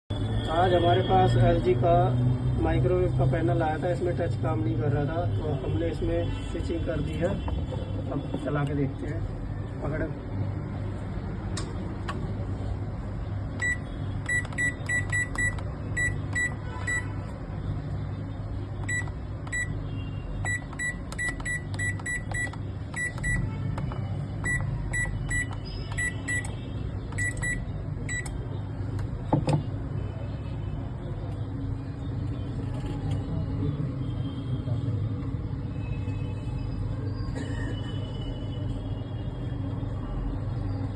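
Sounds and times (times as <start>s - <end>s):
microwave keypad beeps: 13.6s - 17.1s, 18.8s - 19.8s, 20.4s - 28.4s.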